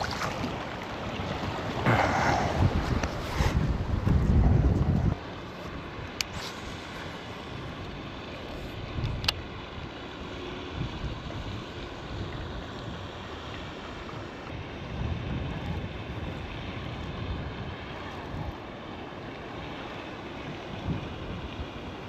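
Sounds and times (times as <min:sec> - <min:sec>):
strong wind buffeting microphone: 0:00.0 - 0:10.0, 0:14.5 - 0:18.9, 0:19.5 - 0:22.0.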